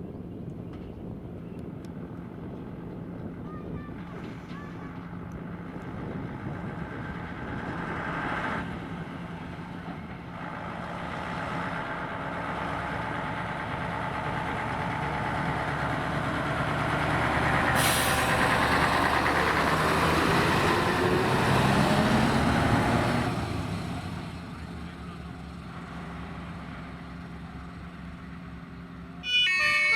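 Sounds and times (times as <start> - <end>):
truck engine running: 4.2 - 29.9
air brake hiss: 17.8 - 18.8.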